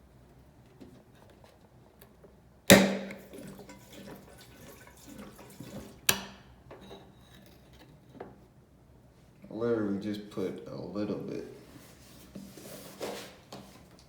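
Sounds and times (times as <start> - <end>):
gasoline pouring into fuel tank: 2.8 - 6.6.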